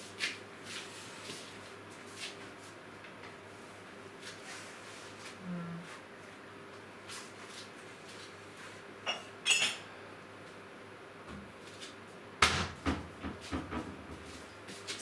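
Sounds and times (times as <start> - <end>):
dishes clattering: 9.0 - 9.9
dishes clinking: 9.0 - 9.9.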